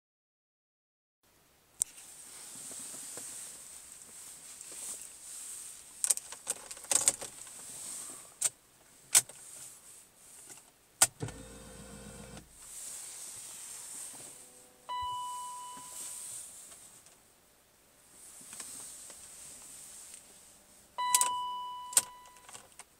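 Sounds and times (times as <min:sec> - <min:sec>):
starter low whirr: 0:11.2 - 0:12.5.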